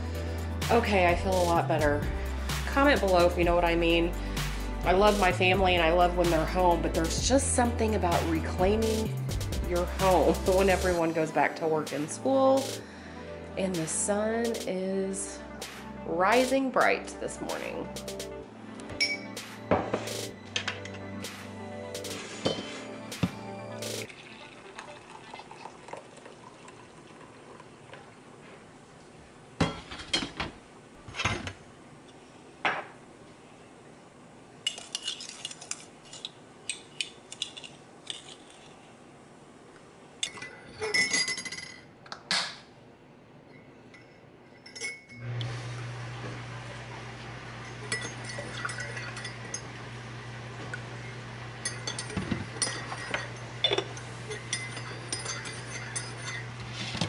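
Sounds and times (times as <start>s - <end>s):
low hum with hiss: 0.0s - 19.3s, 19.9s - 57.0s
dishes and cutlery clinking: 18.9s - 21.1s, 22.1s - 22.9s, 29.6s - 30.5s, 34.6s - 38.7s, 40.2s - 42.6s, 43.5s - 45.2s, 47.6s - 49.8s, 51.6s - 57.0s.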